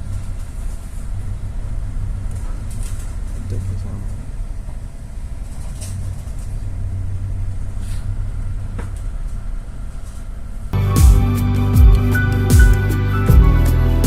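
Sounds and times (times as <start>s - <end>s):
low rumble aboard a ship: 0.0s - 10.8s.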